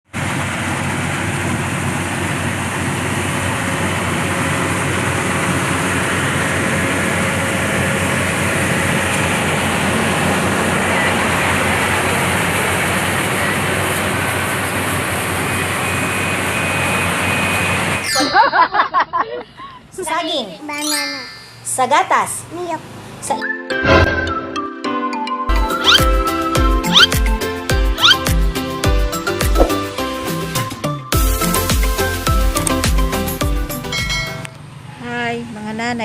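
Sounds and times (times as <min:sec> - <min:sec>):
combine harvester running: 0:00.1 - 0:18.7.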